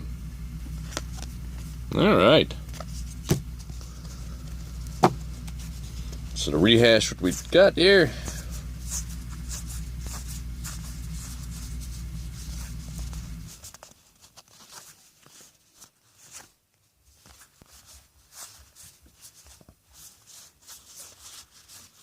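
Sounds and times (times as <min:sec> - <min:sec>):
steady low hum: 0:00.0 - 0:14.1
trading cards shuffled: 0:00.6 - 0:01.8, 0:02.6 - 0:22.0.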